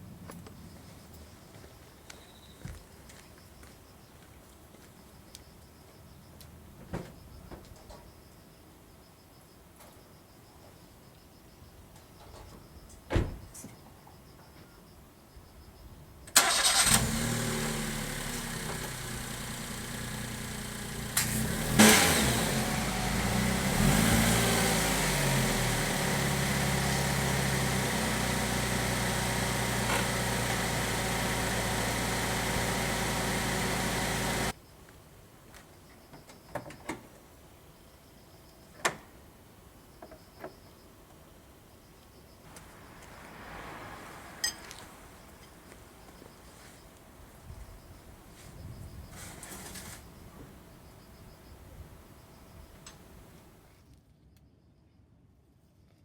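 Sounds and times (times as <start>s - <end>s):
car engine starting and idling: 16.3s - 34.6s, 42.5s - 47.2s, 49.4s - 53.6s
engine revving: 16.4s - 34.5s.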